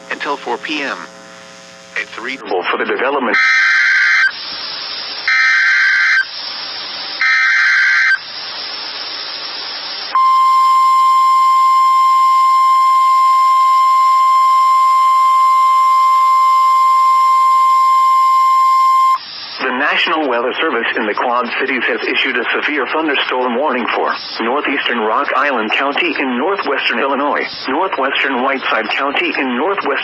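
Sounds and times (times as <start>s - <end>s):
radio hiss: 0.0s - 11.4s, 18.5s - 30.0s
steady warning alarm tone: 3.4s - 4.4s, 5.3s - 6.4s, 7.2s - 8.3s, 10.1s - 19.3s.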